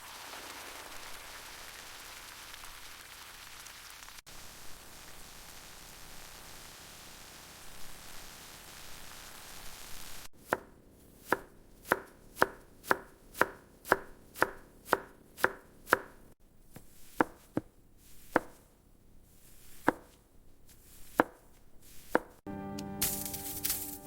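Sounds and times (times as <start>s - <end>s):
knife chopping on cutting board: 10.4s - 18.7s, 19.4s - 22.4s.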